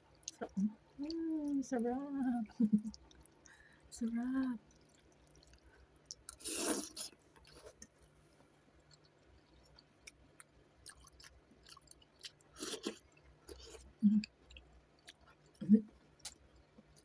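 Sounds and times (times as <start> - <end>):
person chewing noodles: 2.8 - 3.7, 4.6 - 17.0.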